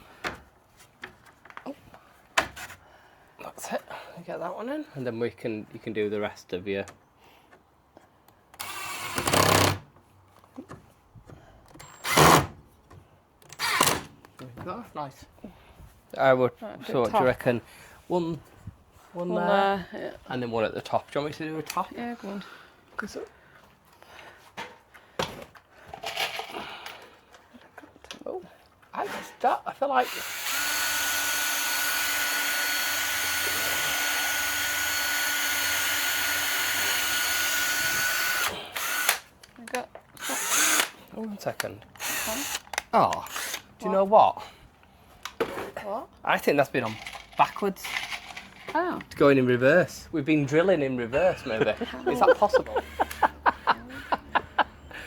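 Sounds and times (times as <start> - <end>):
power drill driving screw into wood: 8.6 - 9.9, 11.8 - 12.6, 13.5 - 14.2, 30.0 - 39.3, 40.2 - 41.0, 42.0 - 43.7.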